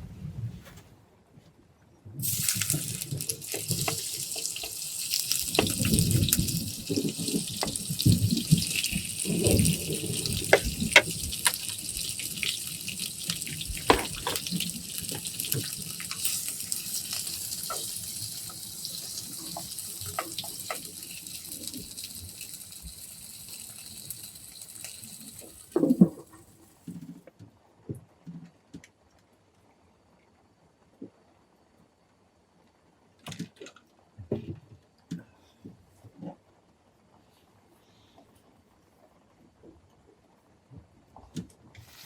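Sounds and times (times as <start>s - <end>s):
raindrops tapping: 2.2s - 26.6s
rain hiss: 2.2s - 27.0s.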